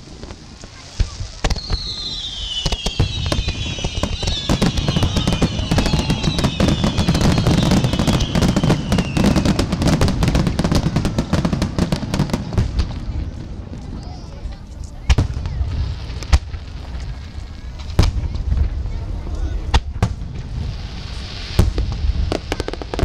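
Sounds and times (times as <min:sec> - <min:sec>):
fireworks bangs and crackles: 0:00.0 - 0:23.0
high descending whistles: 0:01.5 - 0:09.6.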